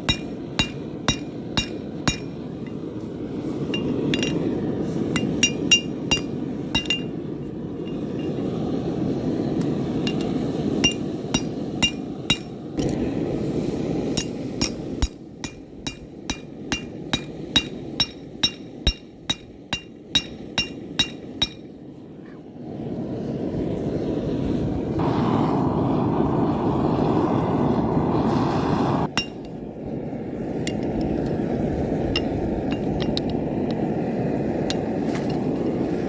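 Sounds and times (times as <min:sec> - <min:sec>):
hammer striking on anvil: 0:00.0 - 0:02.4, 0:05.1 - 0:07.2, 0:10.1 - 0:12.6, 0:14.2 - 0:21.7, 0:29.1 - 0:29.5
steady rushing noise: 0:00.0 - 0:21.7, 0:22.7 - 0:36.0.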